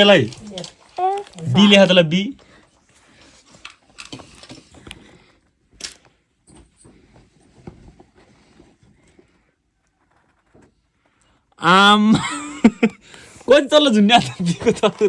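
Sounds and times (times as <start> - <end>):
small objects clicking and rustling: 0.0 - 2.0, 3.2 - 5.2.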